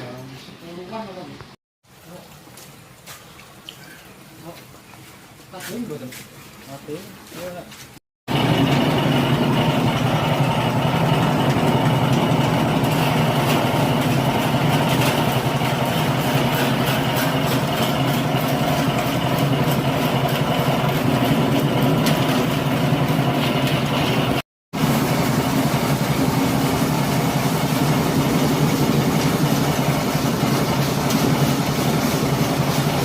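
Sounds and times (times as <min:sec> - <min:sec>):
sand sieving machine running: 0:08.3 - 0:33.0.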